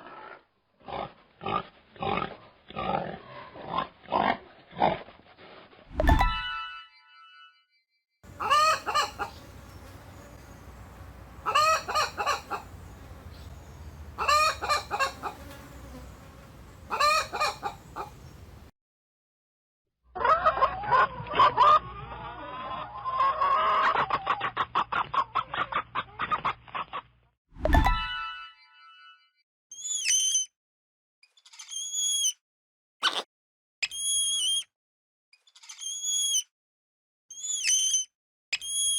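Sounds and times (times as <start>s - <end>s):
chickens clucking: 8.3s - 18.7s
rooster crowing: 8.3s - 18.7s.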